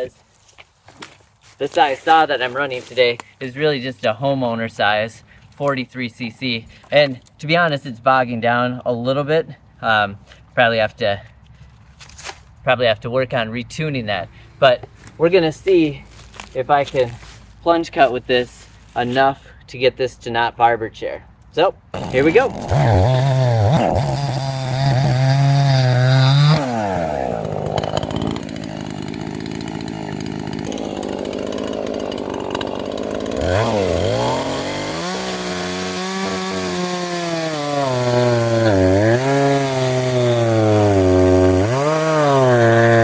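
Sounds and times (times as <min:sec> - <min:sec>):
chainsaw cutting into tree: 0:21.9 - 0:43.0.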